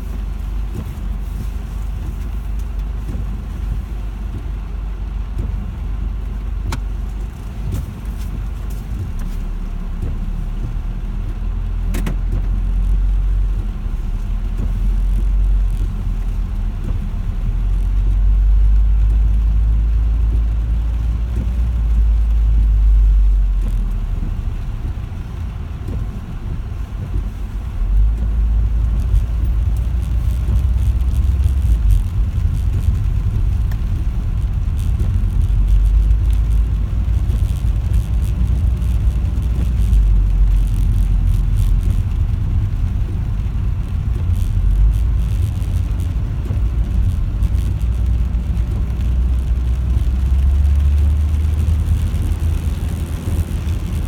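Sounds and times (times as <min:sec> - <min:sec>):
car engine and road noise: 0:00.0 - 0:54.0.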